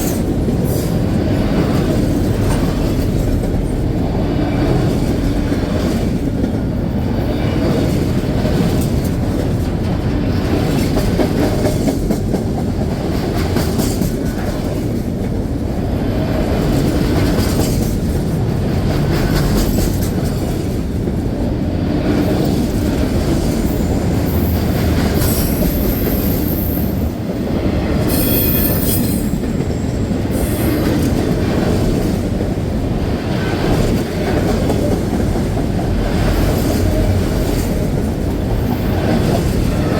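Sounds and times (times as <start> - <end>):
train rumbling past: 0.0 - 39.9
high-pitched wheel squeals: 25.3 - 27.1, 28.1 - 30.7.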